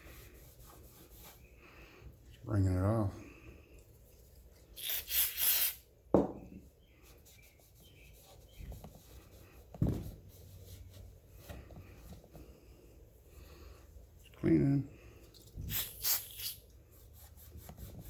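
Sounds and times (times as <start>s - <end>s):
aerosol spray hissing: 4.8s - 5.8s, 15.7s - 16.6s.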